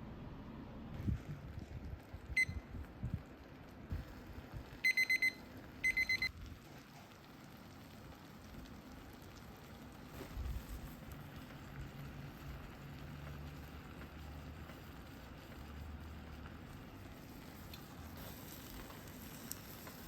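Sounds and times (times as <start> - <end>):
high electronic timer beeps: 2.4 - 2.6, 4.8 - 6.3.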